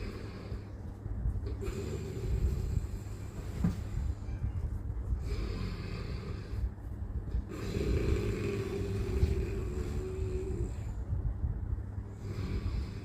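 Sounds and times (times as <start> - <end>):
person snoring: 1.6 - 3.2, 5.2 - 6.7, 7.5 - 11.0, 12.1 - 13.0.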